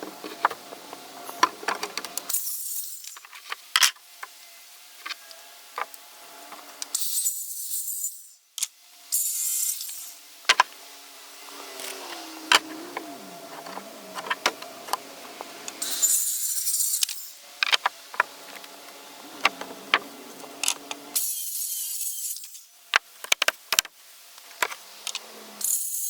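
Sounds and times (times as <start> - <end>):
saw cutting through wood: 10.8 - 17.3.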